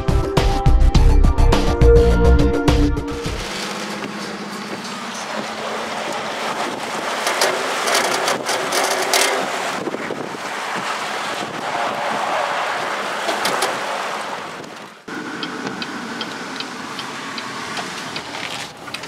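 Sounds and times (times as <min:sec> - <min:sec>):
wind gusting across microphone: 0:04.4 - 0:15.8.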